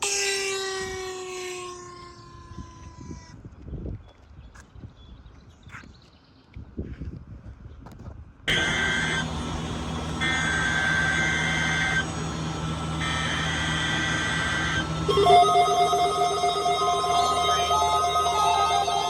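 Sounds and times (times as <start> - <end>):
low fluttering alarm: 8.5 - 19.0
low hum: 12.0 - 19.0
high pulsing electronic alarm beeps: 13.0 - 19.0.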